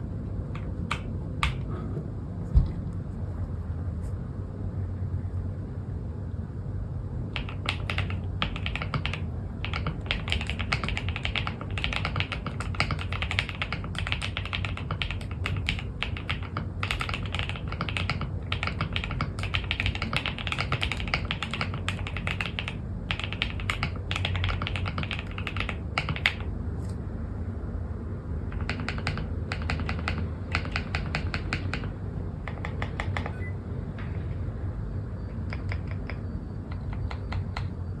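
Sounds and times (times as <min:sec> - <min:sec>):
typing on computer keyboard: 0:00.5 - 0:01.7, 0:07.3 - 0:27.0, 0:28.4 - 0:33.5, 0:35.3 - 0:38.0.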